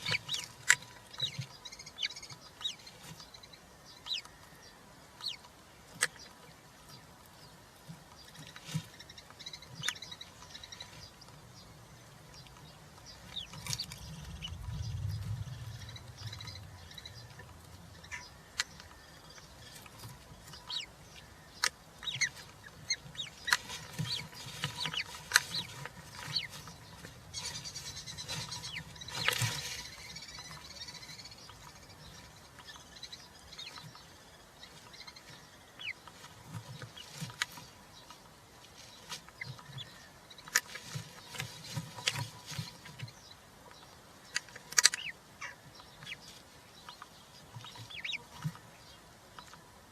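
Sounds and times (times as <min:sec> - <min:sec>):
chicks chirping and clicking: 0:00.0 - 0:49.9
rustling: 0:00.0 - 0:49.9
low rumble: 0:13.8 - 0:18.3.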